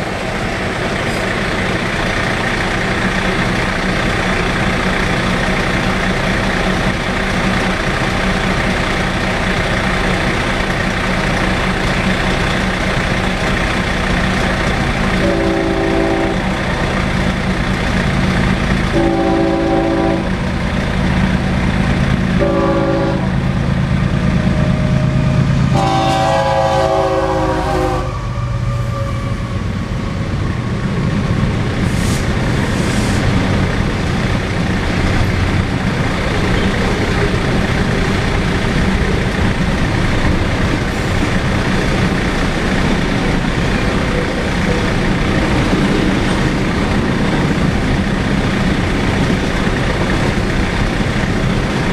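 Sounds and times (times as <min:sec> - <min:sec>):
diesel engines droning: 0:00.0 - 0:51.9
freight train rolling past: 0:00.0 - 0:51.9
train horn blasts: 0:15.2 - 0:16.6, 0:18.9 - 0:20.4, 0:22.4 - 0:23.4, 0:24.6 - 0:29.7.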